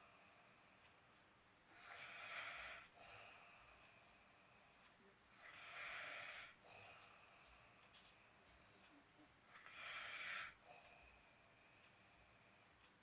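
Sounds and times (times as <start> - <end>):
man snoring faintly: 5.3 - 7.3, 9.5 - 11.2.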